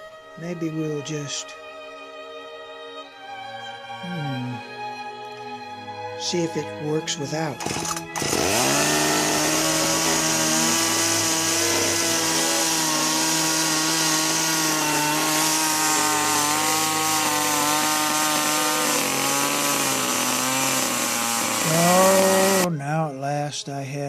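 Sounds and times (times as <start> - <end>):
chainsaw engine running: 7.5 - 22.7.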